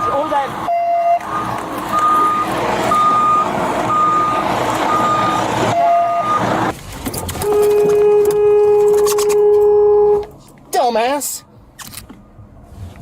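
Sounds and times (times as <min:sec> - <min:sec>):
back-up alarm beeping: 0:00.7 - 0:06.5.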